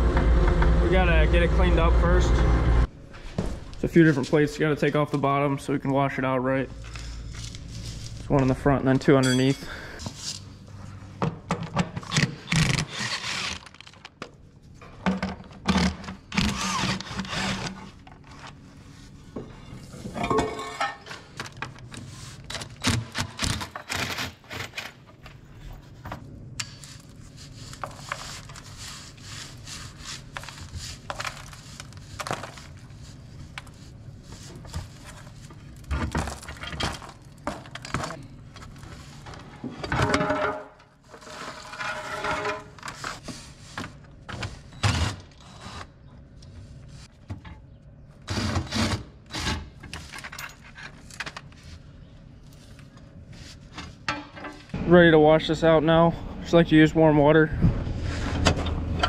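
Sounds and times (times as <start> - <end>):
tools and steel parts clanking: 9.0 - 10.4, 19.9 - 21.9, 39.3 - 43.0, 49.8 - 51.3.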